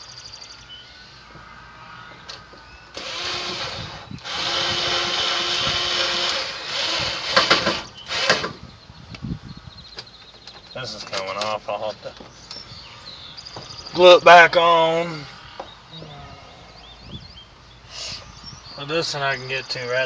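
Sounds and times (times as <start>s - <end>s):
power drill driving screws: 2.9s - 8.6s.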